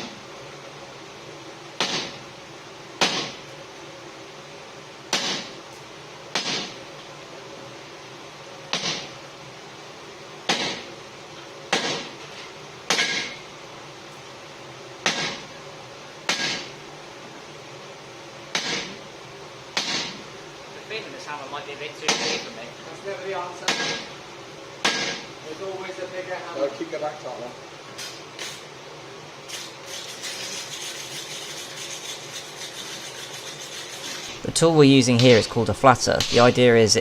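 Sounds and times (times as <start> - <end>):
steady background hum: 0.0 - 37.0
hammer striking steel on anvil: 12.9 - 13.4, 23.7 - 24.1, 24.8 - 25.2.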